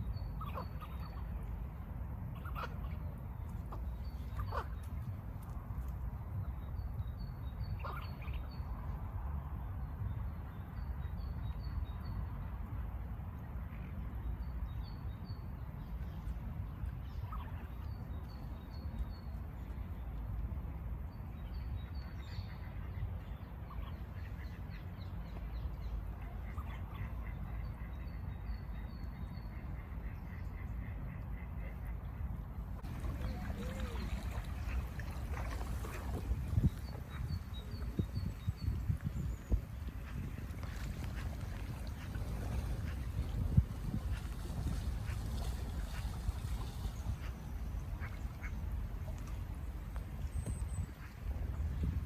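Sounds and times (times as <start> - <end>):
low bird calls: 32.8 - 43.5.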